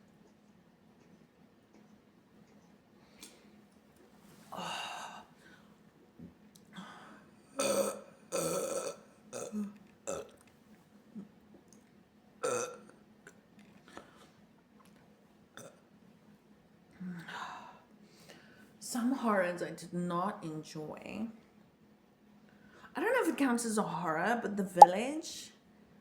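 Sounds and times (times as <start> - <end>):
woman burping: 7.6 - 10.3, 12.4 - 12.8.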